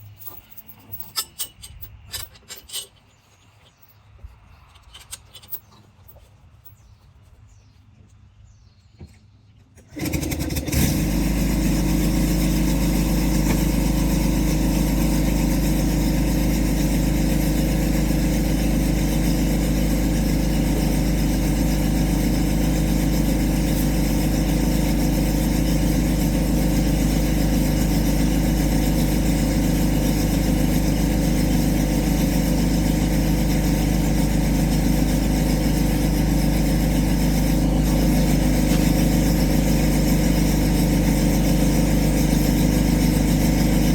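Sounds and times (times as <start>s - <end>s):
engine starting and idling: 9.8s - 43.9s.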